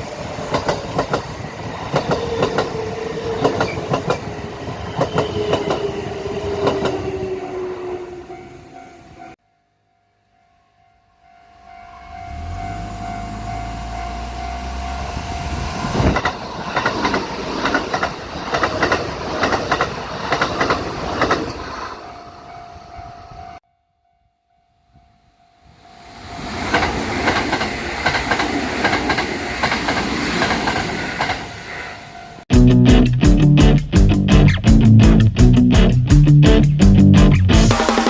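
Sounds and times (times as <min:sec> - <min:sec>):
electric train rumbling: 0:00.0 - 0:09.4, 0:11.2 - 0:23.6, 0:25.7 - 0:38.0
wheels clacking over rail joints: 0:00.4 - 0:06.0, 0:16.0 - 0:22.0, 0:26.6 - 0:31.5
level crossing alarm tone: 0:11.6 - 0:15.8.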